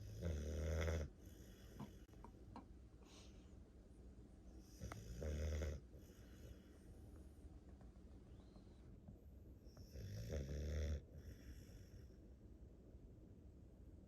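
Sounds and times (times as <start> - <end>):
dog snoring: 0.0 - 2.0, 4.6 - 6.6, 9.8 - 12.1.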